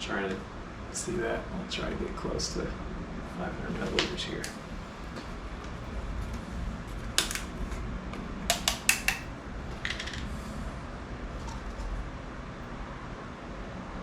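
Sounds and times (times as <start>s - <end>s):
steady low hum: 0.0s - 14.0s
containers clicking and knocking: 6.9s - 10.3s.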